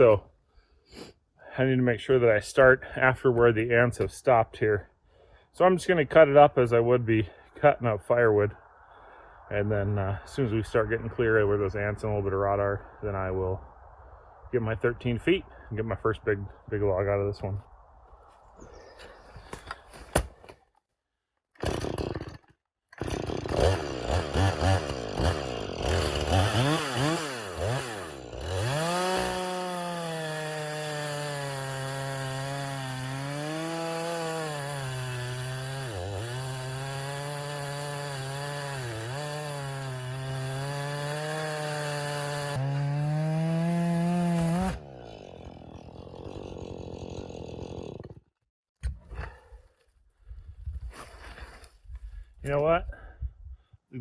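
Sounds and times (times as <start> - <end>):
chainsaw cutting wood: 21.6 - 48.3.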